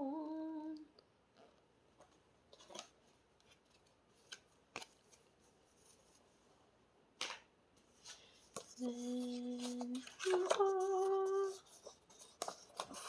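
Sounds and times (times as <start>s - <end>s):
soft paper rustles and scrapes: 2.5s - 6.5s, 7.8s - 13.0s.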